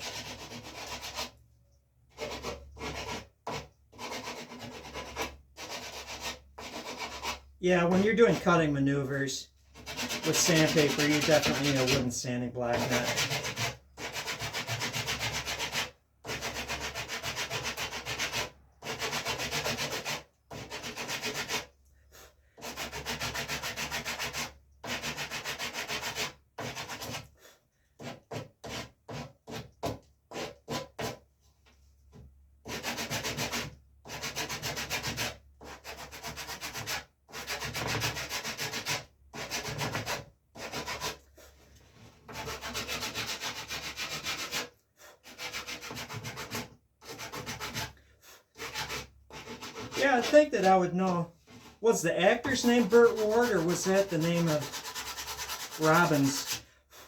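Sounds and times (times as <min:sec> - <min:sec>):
sandpaper rubbing on wood: 0:04.0 - 0:08.5, 0:09.8 - 0:21.7, 0:22.6 - 0:27.2, 0:32.7 - 0:41.2, 0:42.3 - 0:48.0, 0:48.6 - 0:57.0.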